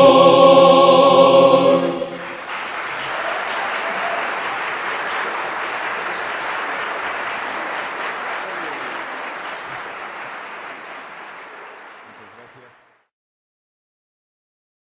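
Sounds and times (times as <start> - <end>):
choir singing sustained chord: 0.0 - 2.4
audience applause: 2.1 - 13.1.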